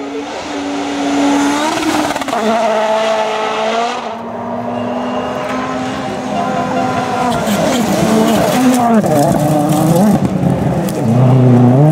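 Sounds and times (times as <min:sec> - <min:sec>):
rally car engine at full throttle: 0:00.0 - 0:11.9.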